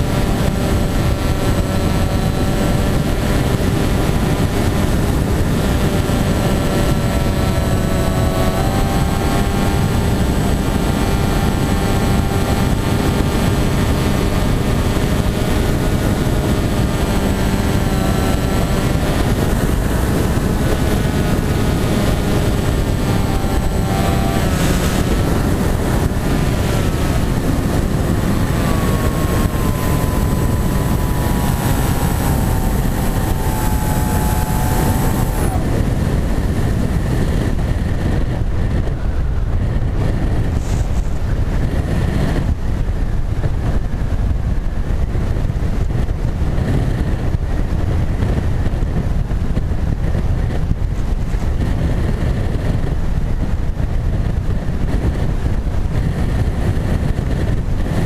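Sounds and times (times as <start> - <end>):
model plane motor whine: 0.0 - 37.2
heavy wind rush: 0.0 - 58.0.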